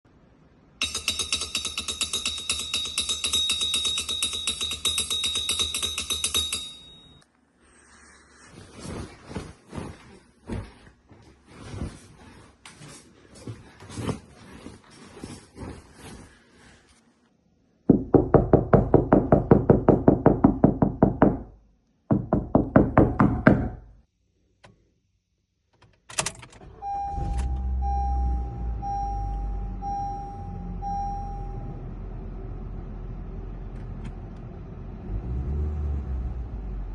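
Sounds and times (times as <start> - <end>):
chime beeping: 26.8 - 31.8.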